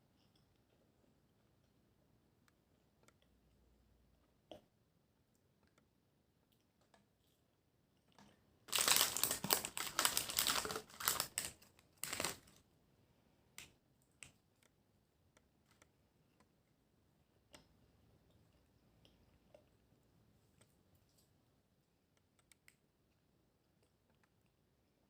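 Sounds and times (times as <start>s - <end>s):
dense crinkling and clicking: 8.1s - 12.6s.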